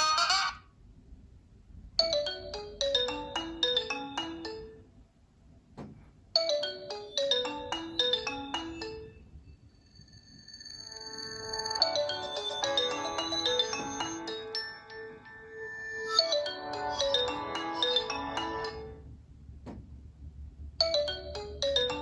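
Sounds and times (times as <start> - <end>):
another ringtone: 2.0 - 4.8, 6.4 - 19.1, 20.8 - 22.0
ringtone melody: 2.0 - 4.8, 6.4 - 9.3, 10.0 - 19.1, 20.8 - 22.0.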